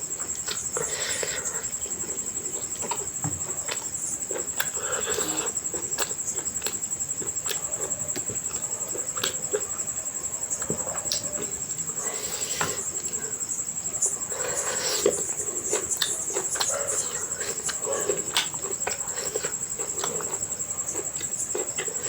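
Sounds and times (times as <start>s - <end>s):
wet chewing and lip smacks: 0.2s - 9.7s, 14.5s - 22.0s.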